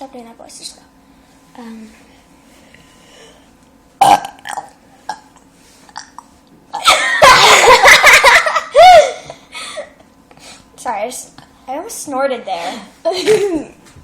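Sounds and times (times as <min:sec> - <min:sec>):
girl burping: 0:04.0 - 0:05.4.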